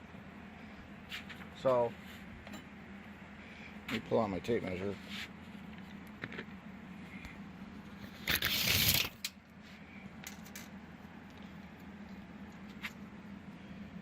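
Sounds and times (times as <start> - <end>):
faint steady hum: 0.0 - 14.0
tape blade rasping rustle: 8.0 - 9.4
tape measure clicks: 8.3 - 9.4.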